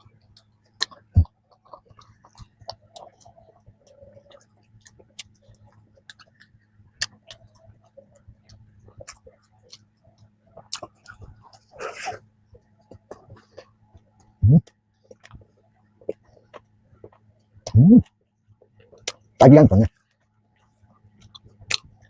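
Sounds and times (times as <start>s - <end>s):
crisp pastry chewing: 0.0s - 17.4s, 19.9s - 22.0s
faint steady hum: 0.0s - 22.0s
mouth clicks: 14.2s - 15.4s, 17.1s - 18.1s.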